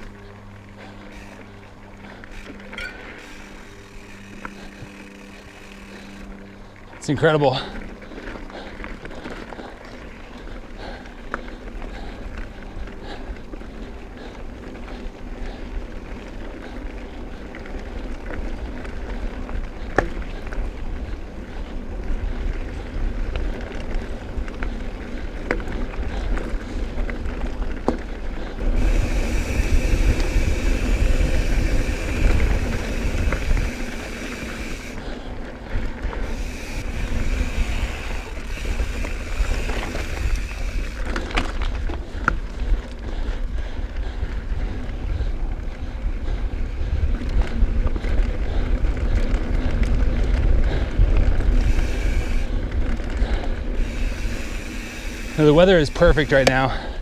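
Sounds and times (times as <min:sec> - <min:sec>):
bike tyre rumble: 0:00.0 - 0:57.0
bike frame rattle: 0:02.3 - 0:06.0
wind buffeting microphone: 0:18.4 - 0:57.0.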